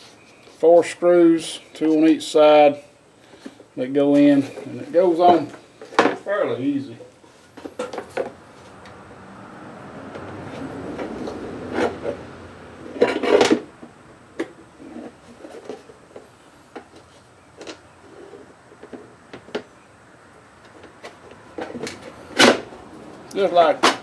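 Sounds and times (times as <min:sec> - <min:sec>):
plastic scraping and rubbing: 0:14.4 - 0:19.7.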